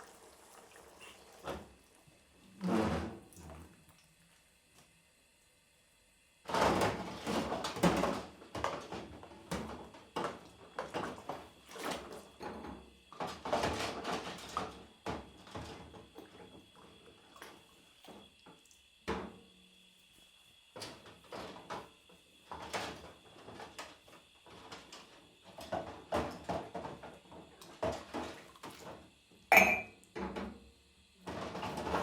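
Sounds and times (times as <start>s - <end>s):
dishes clattering and clinking: 29.5s - 30.5s.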